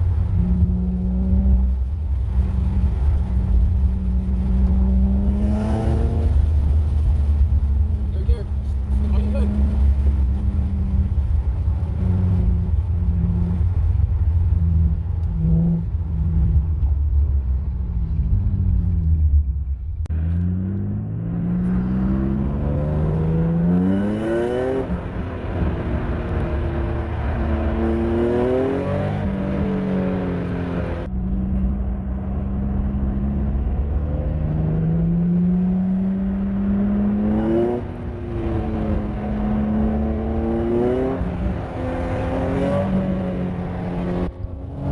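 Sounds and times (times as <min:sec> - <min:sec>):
car engine accelerating hard: 0:00.0 - 0:19.4, 0:20.0 - 0:44.9
car engine droning: 0:00.0 - 0:44.9.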